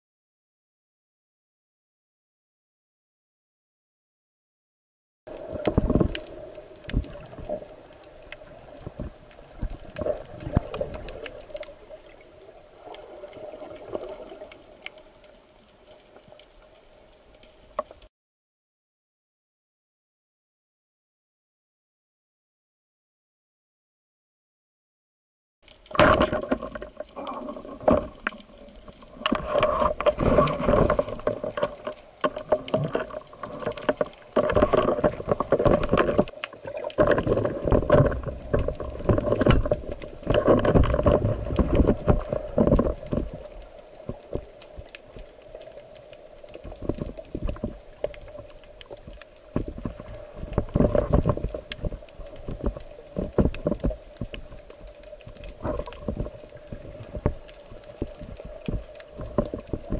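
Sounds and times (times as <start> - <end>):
underwater clicks: 5.3 - 18.1, 25.7 - 59.9
water rushing and gurgling: 5.3 - 18.1, 25.7 - 59.9.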